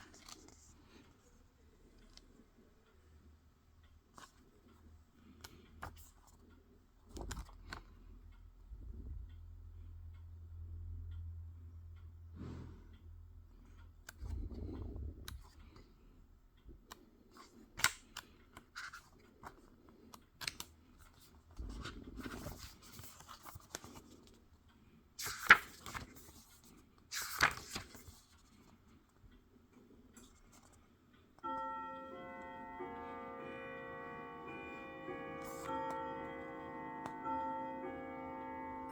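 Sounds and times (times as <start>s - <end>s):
bell-like background music: 31.4s - 38.9s.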